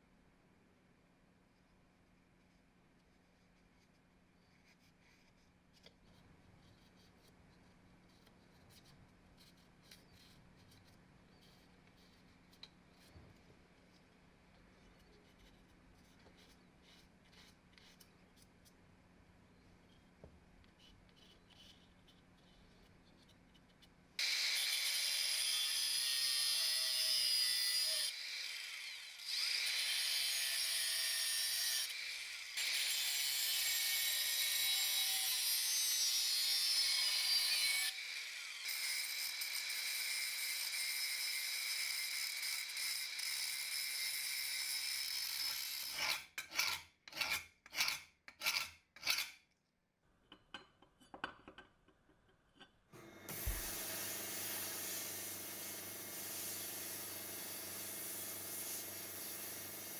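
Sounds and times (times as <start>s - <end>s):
faint scratching: 1.6s - 18.9s, 19.7s - 24.0s
electric power tool running: 53.0s - 59.9s.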